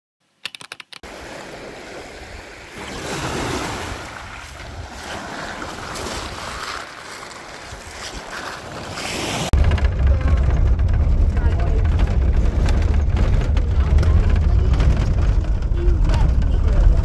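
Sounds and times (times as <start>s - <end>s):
quick clicks: 0.4s - 1.0s
waves washing onto shore: 1.0s - 17.0s
wind buffeting microphone: 9.4s - 17.0s.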